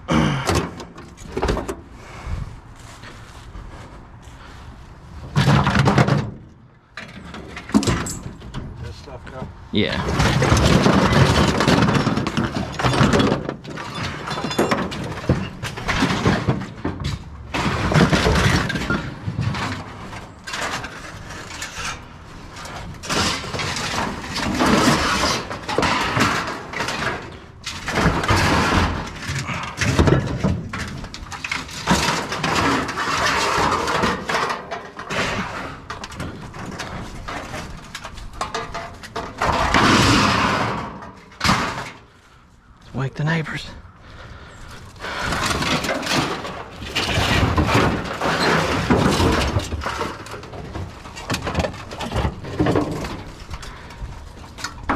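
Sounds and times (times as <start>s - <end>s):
scrap metal clattering onto pile: 10.1s - 42.1s, 45.2s - 54.9s.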